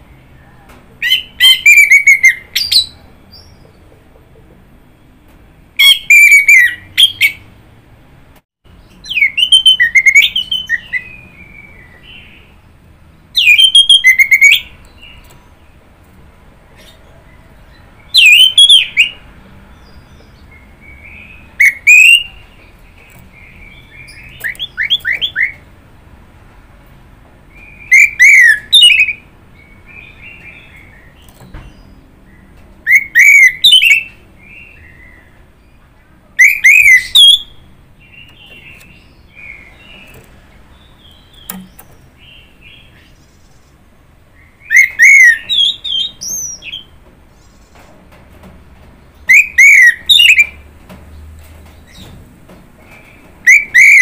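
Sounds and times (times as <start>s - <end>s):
thrush whistled song: 9.0s - 12.3s, 13.4s - 14.7s, 18.1s - 19.2s, 20.9s - 22.4s, 27.6s - 29.2s, 32.9s - 35.3s, 36.4s - 37.6s, 44.4s - 46.9s, 49.3s - 50.6s
soft bird twittering: 16.7s - 25.7s, 27.5s - 47.8s.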